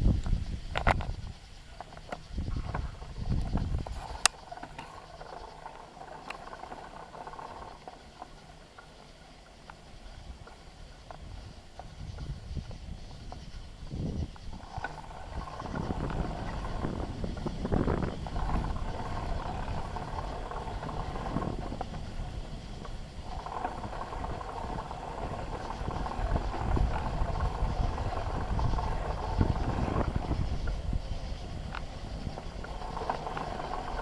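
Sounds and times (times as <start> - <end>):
bike rattles and knocks: 0.0 - 34.0
tyres and wind rumble: 0.0 - 34.0.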